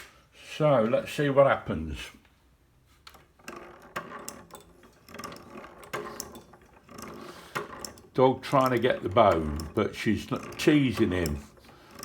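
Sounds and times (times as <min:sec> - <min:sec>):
wooden mechanism clicking and knocking: 0:03.0 - 0:12.0.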